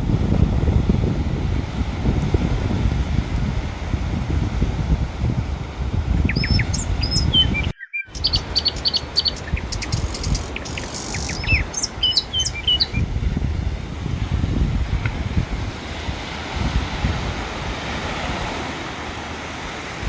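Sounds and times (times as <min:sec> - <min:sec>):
surf rumble: 0:00.0 - 0:20.0
wind on microphone: 0:00.0 - 0:20.0
small birds chirping: 0:06.2 - 0:13.1.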